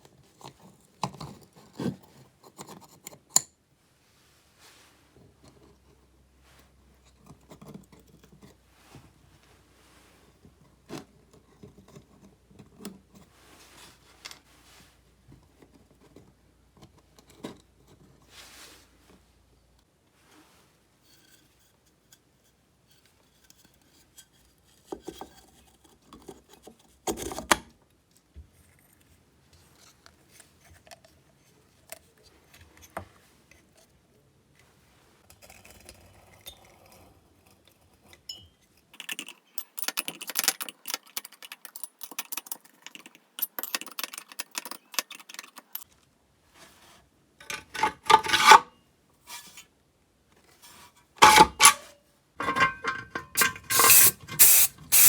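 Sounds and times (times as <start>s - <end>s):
tools clicking and knocking: 39.0s - 45.9s, 52.4s - 55.0s
scraping and rubbing: 50.6s - 55.0s.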